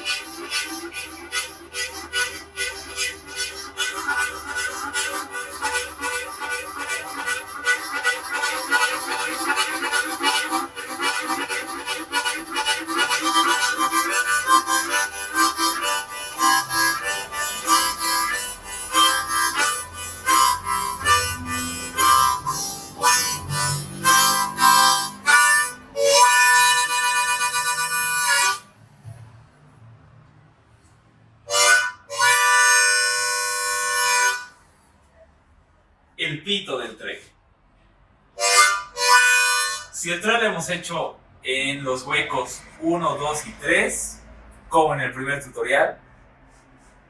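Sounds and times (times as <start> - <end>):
harmonica train rhythm: 0.0 - 28.8, 31.5 - 34.7, 38.3 - 40.6.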